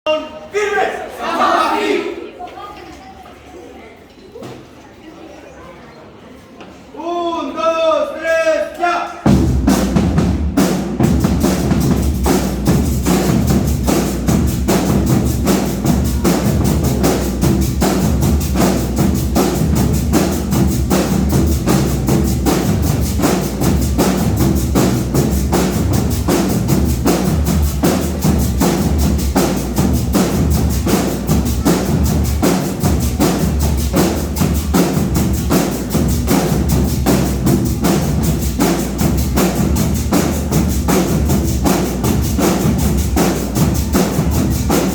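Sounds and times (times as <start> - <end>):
marching band playing: 0.6 - 2.3, 9.2 - 44.9
snare and bass drum beat: 9.3 - 44.9.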